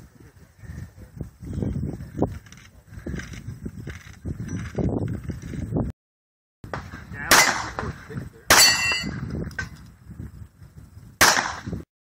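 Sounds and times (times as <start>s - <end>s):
pistol shots: 6.7s - 7.9s, 8.5s - 9.1s, 11.2s - 11.8s
steel plate target clanging: 8.5s - 9.8s.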